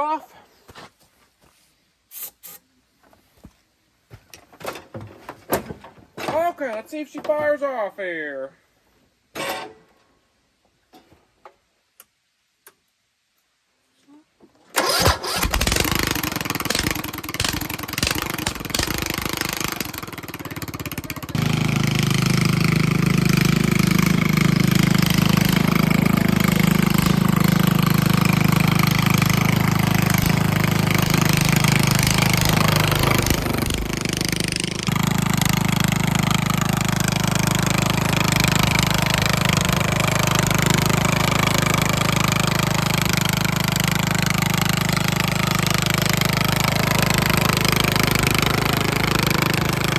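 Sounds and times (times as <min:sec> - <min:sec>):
riding lawn mower engine: 0:14.8 - 0:49.9.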